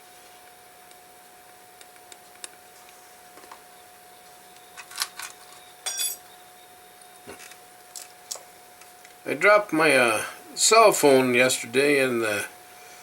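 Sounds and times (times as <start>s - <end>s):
faint steady hum: 0.0s - 13.0s
ringing metal clink: 5.8s - 6.3s.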